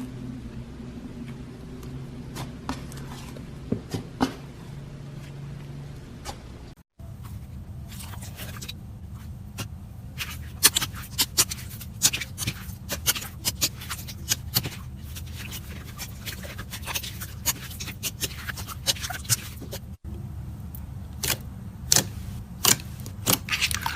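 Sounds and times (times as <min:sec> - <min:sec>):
steady low hum: 0:00.0 - 0:23.9.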